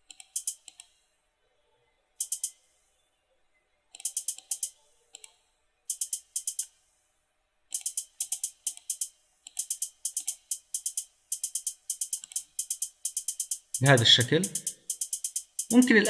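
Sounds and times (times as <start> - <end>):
quick bright percussion ticks: 0.2 - 0.8, 2.2 - 2.6, 4.0 - 4.7, 5.9 - 6.7, 7.7 - 16.0.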